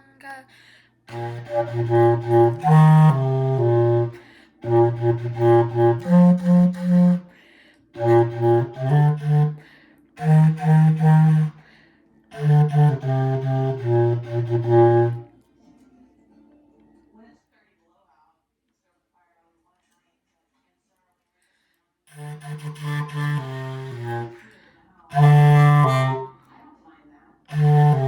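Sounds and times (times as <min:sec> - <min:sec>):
low-pitched instrument solo: 0:01.1 - 0:07.2, 0:08.0 - 0:09.6, 0:10.2 - 0:11.5, 0:12.3 - 0:15.2, 0:27.5 - 0:28.0.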